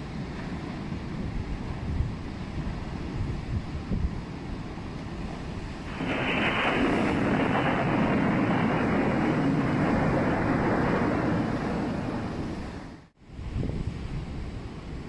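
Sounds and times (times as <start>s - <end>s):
storm waves breaking: 2.6s - 13.2s
loud rush of water: 4.2s - 13.1s.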